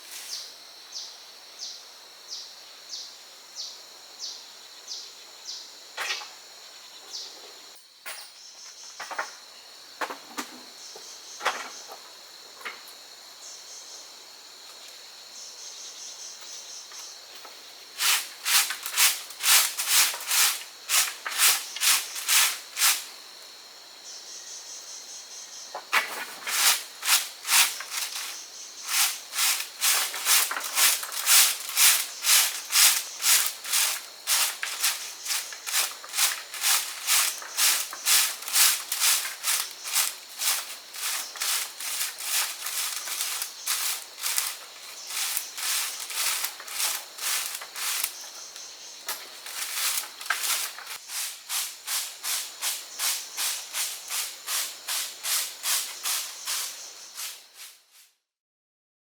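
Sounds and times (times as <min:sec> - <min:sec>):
rhythmic scraping strokes: 0:26.5 - 0:48.1.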